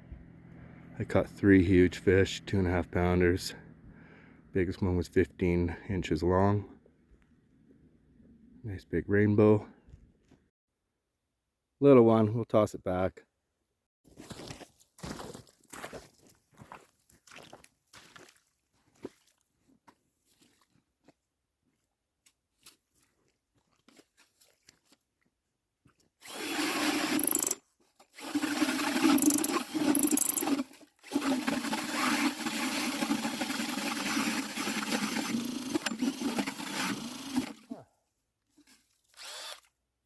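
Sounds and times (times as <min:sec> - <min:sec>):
power ice auger drilling: 0:26.2 - 0:37.8, 0:39.1 - 0:39.8.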